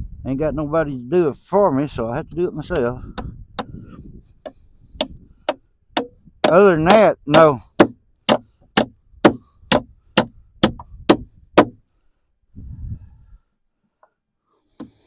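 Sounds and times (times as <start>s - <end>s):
hammer driving nail into wood: 3.0s - 3.8s, 4.4s - 11.8s, 14.7s - 15.0s.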